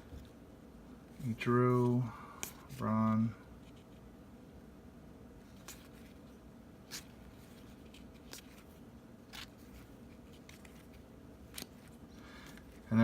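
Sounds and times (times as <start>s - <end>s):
trading cards flipped through: 5.5s - 12.9s.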